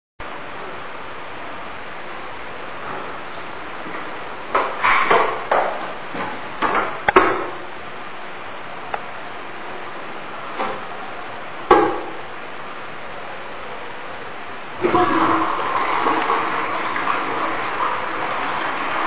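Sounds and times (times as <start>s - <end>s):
toilet flush water running: 14.7s - 19.0s.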